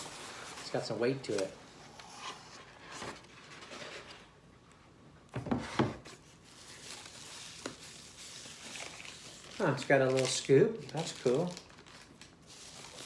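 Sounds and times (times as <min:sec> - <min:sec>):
packaging rustling: 0:06.2 - 0:13.0.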